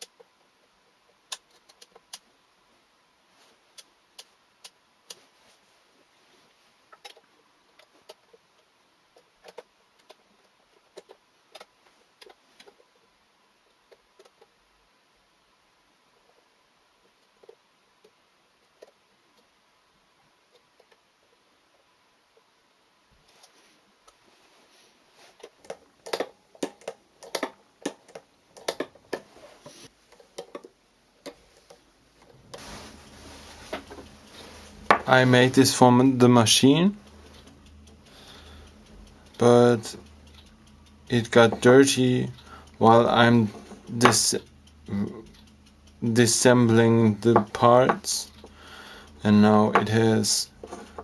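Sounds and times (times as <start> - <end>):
faint clicks and light taps: 25.2 - 51.0
steady hiss: 30.9 - 51.0.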